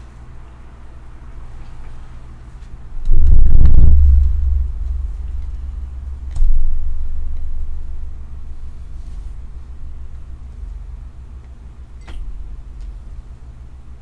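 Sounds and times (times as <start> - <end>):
heavy low thumps with rumble: 3.0 - 8.9.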